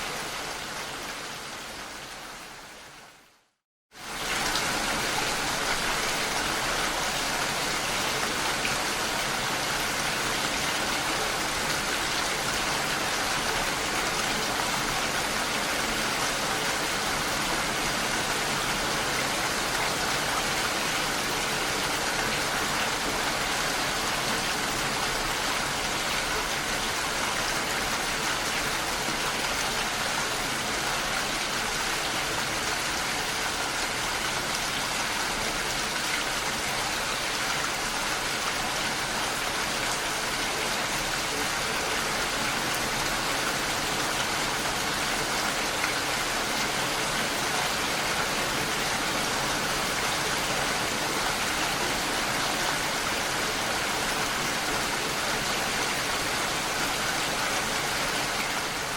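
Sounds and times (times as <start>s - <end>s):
steady rain falling: 0.0s - 58.9s.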